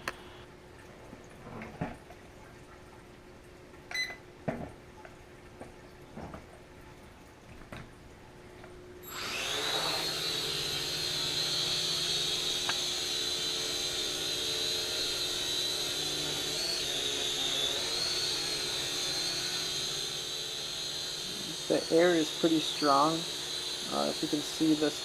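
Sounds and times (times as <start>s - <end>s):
drone motors whining: 9.0s - 25.0s.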